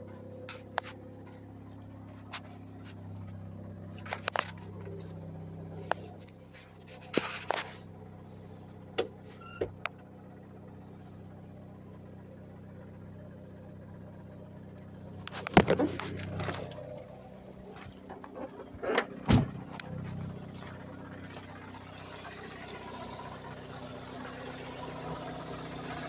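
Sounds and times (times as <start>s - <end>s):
sharp engine clicks and knocks: 0.0s - 7.9s, 8.9s - 10.2s, 14.6s - 26.0s
car engine idling: 0.0s - 26.0s.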